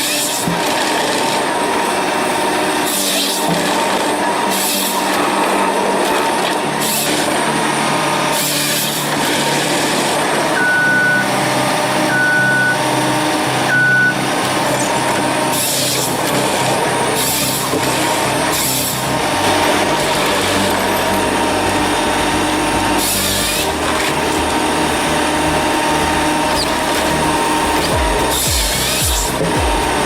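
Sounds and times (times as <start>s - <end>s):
heavy machine engine running: 0.0s - 30.0s
reversing alarm beeping: 10.5s - 13.0s, 13.6s - 14.4s.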